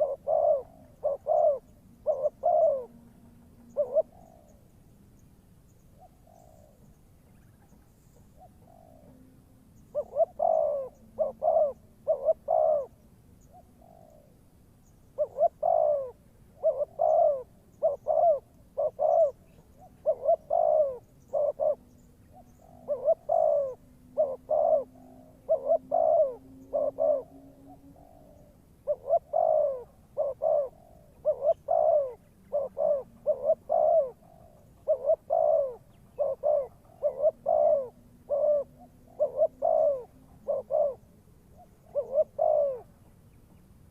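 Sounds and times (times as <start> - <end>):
dove cooing: 0.0 - 4.7, 6.0 - 14.4, 15.2 - 43.0.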